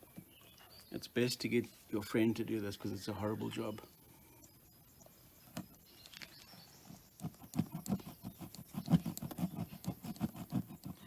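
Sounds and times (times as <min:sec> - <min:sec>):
rubbery scrapes and knocks: 0:05.5 - 0:11.0.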